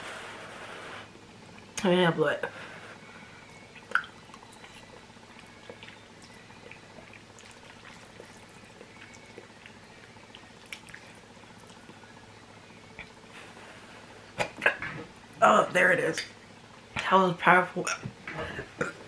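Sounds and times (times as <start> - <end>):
low steady hum: 0.0 - 19.0
wet chewing clicks: 3.8 - 12.0.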